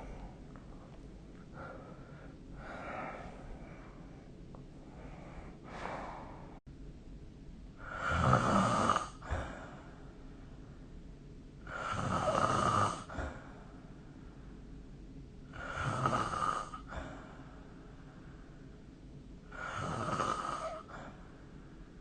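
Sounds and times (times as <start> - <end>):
faint breath: 0.0 - 6.6, 9.2 - 10.8, 13.1 - 14.7, 16.9 - 18.9, 20.6 - 22.0
person snoring: 7.8 - 9.5, 11.6 - 13.3, 15.5 - 16.9, 19.5 - 21.1.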